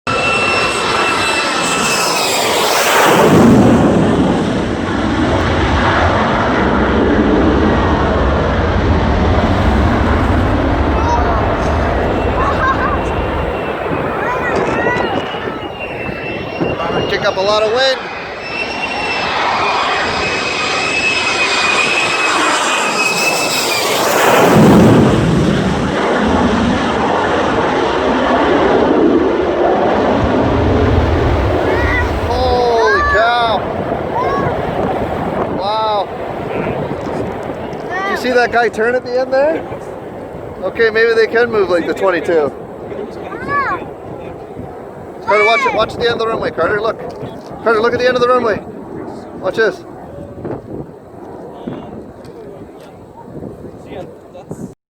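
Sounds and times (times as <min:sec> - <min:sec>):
jet flying past: 0:00.1 - 0:54.4.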